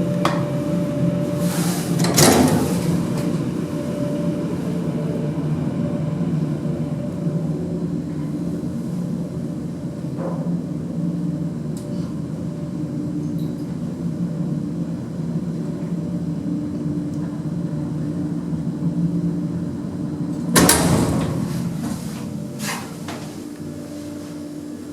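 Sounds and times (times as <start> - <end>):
lift doors clattering open: 0.0 - 4.9, 20.4 - 23.8
lift humming: 0.0 - 24.9.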